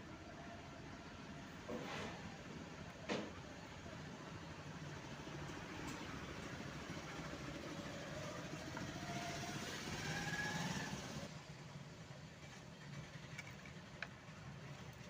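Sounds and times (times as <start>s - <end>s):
engine running: 4.8s - 11.5s.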